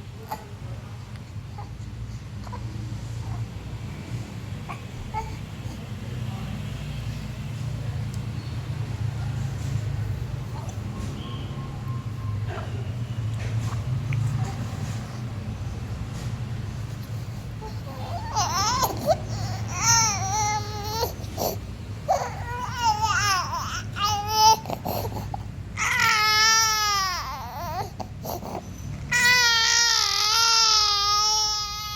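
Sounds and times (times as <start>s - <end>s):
small child crying: 17.9s - 25.0s, 25.8s - 31.9s.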